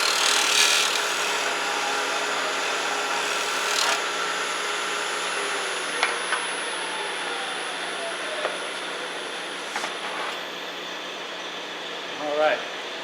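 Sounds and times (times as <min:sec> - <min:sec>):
machine whirring: 0:00.0 - 0:07.6.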